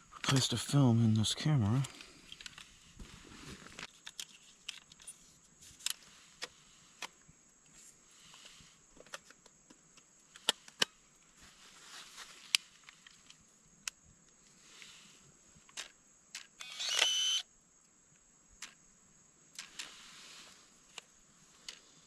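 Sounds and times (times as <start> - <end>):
camera clicks and small knocks: 3.8 - 5.1.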